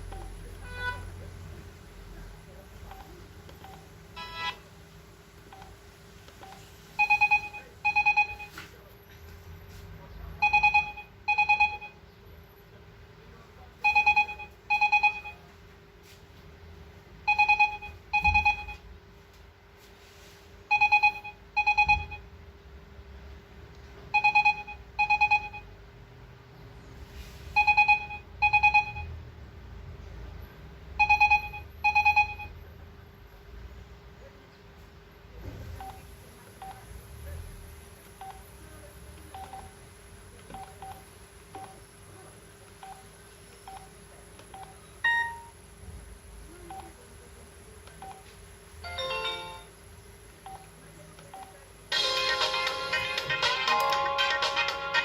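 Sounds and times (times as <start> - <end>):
phone ringtone double ring: 20.7 - 22.2, 27.6 - 29.1.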